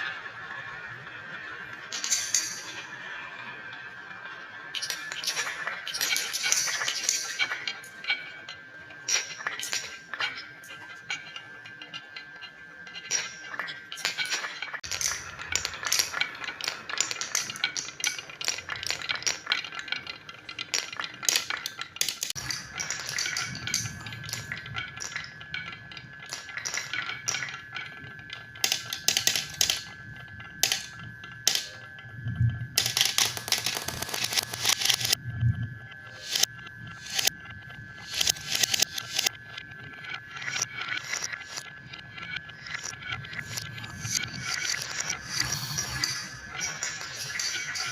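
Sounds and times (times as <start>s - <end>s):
marbles clattering down wooden run: 1.6s - 2.8s, 4.8s - 8.0s, 9.0s - 10.4s, 13.0s - 29.9s, 32.8s - 35.2s, 36.2s - 37.3s, 38.1s - 39.3s, 40.4s - 47.9s.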